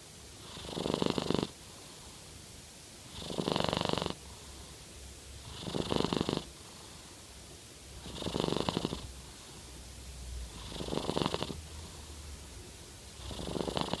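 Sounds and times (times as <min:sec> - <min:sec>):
cat purring and snoring: 0:00.4 - 0:01.6, 0:03.1 - 0:04.2, 0:05.4 - 0:06.5, 0:08.0 - 0:09.2, 0:10.5 - 0:11.8, 0:13.2 - 0:14.0.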